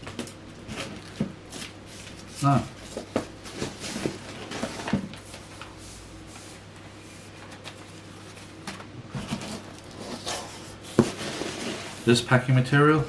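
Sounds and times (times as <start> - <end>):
packing material rustling: 9.2 - 12.2.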